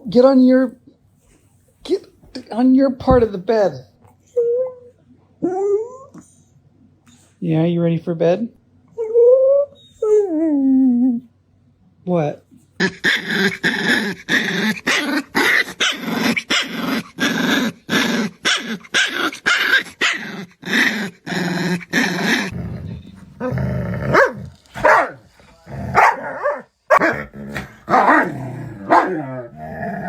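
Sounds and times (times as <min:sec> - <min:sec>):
dog whining up and down: 0:04.2 - 0:06.3, 0:08.9 - 0:11.3
dog growling and barking: 0:12.8 - 0:30.0.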